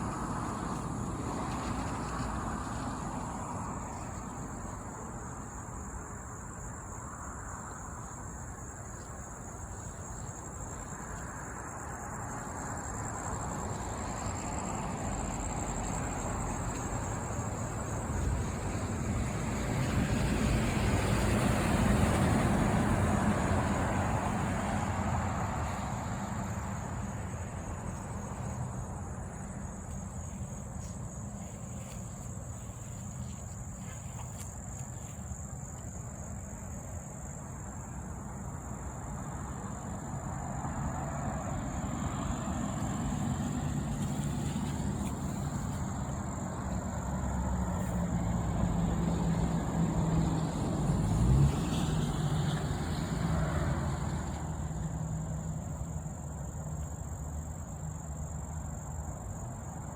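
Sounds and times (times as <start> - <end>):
crickets trilling: 0.0 - 59.9
vehicle passing: 13.0 - 36.0, 39.0 - 56.1.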